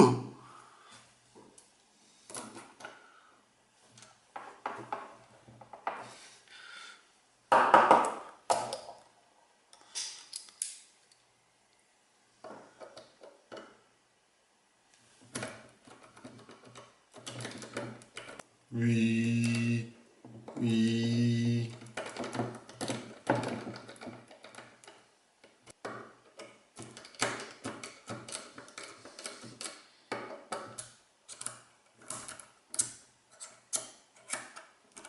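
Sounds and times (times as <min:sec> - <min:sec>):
lock tool clicking and rattling: 0:15.4 - 0:18.4, 0:21.7 - 0:35.0.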